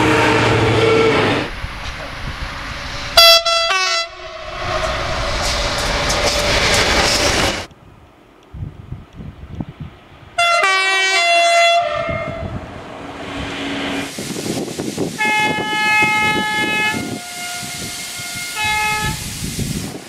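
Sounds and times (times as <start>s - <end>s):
train horn blast: 0.0s - 1.5s, 3.2s - 5.2s, 10.4s - 12.6s, 15.2s - 19.2s
train passing: 0.0s - 8.2s, 11.8s - 20.0s.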